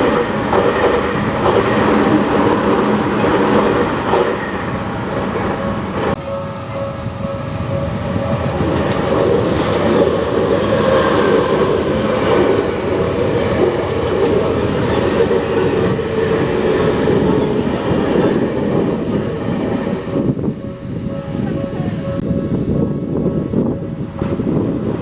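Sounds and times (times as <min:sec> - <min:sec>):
crossing warning bell: 0:00.0 - 0:25.0
train passing: 0:00.0 - 0:25.0.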